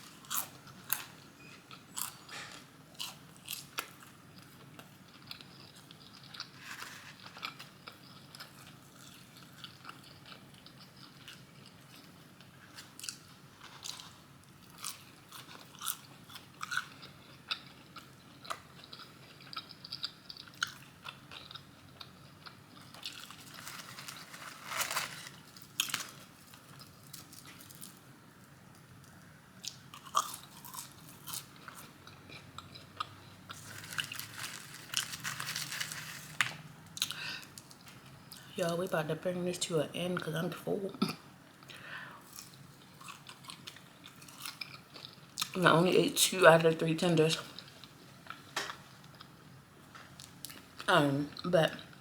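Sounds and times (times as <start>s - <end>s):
crunchy chewing of fried food: 0.0s - 38.5s, 41.5s - 45.6s, 47.4s - 52.0s.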